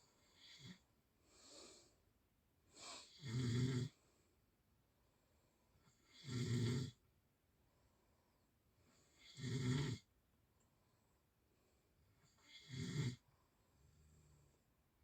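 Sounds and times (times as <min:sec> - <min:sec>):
soft breathing: 0:00.0 - 0:03.2, 0:03.9 - 0:05.9, 0:07.6 - 0:09.2, 0:10.6 - 0:12.4, 0:13.2 - 0:15.0
person snoring: 0:02.9 - 0:04.0, 0:05.9 - 0:07.0, 0:09.1 - 0:10.1, 0:12.3 - 0:13.2.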